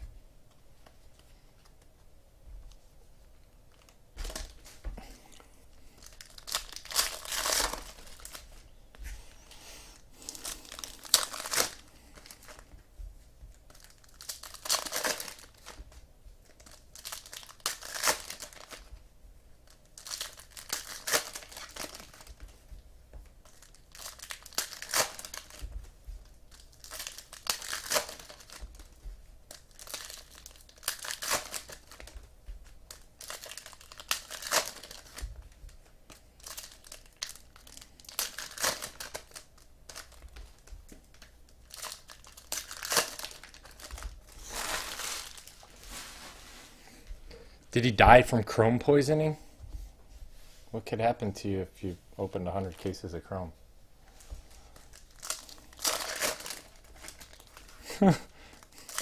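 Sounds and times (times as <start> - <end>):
card pack wrappers tearing and crinkling: 6.0 - 8.5, 10.2 - 12.7, 13.7 - 19.0, 19.6 - 22.4, 23.4 - 25.7, 26.5 - 35.4, 36.1 - 46.4, 52.6 - 53.2, 54.8 - 59.0.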